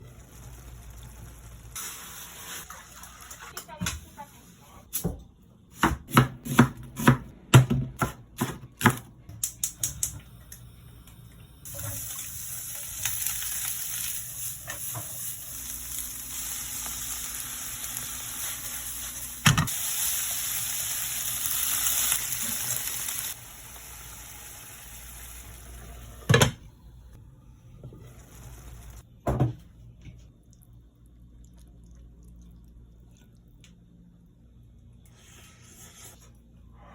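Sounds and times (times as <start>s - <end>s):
hiss of running water or frying: 0.0s - 4.6s, 11.6s - 26.3s, 27.9s - 29.0s.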